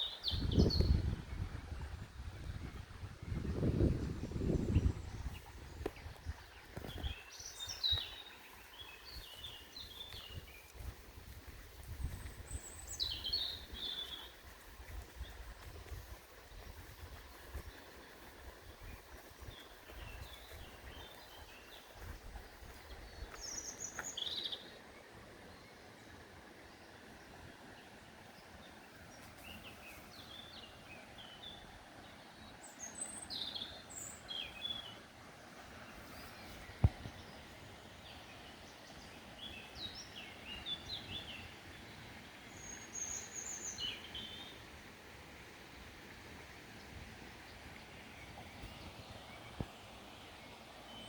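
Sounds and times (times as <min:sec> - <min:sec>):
small birds chirping: 0:00.0 - 0:01.1, 0:03.6 - 0:24.8.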